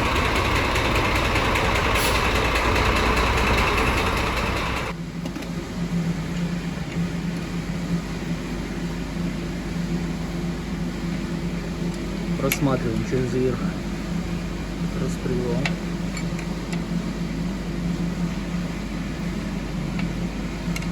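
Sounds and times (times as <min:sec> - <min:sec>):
diesel engine running: 0:00.0 - 0:04.9
steady low hum: 0:00.0 - 0:20.9.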